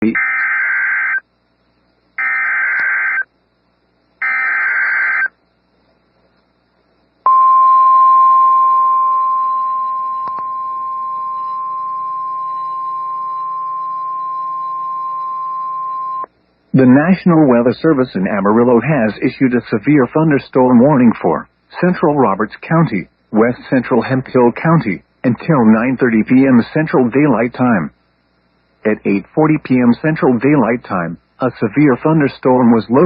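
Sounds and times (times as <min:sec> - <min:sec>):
digital data tone bursts: 0:02.2 - 0:03.3, 0:04.2 - 0:05.4, 0:07.3 - 0:17.1
steady warning alarm tone: 0:02.2 - 0:03.3, 0:04.2 - 0:05.4, 0:07.3 - 0:16.3.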